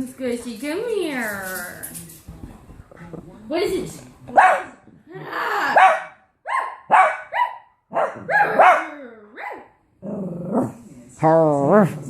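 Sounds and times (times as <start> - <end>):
dogs barking: 4.3 - 4.8, 5.7 - 9.8.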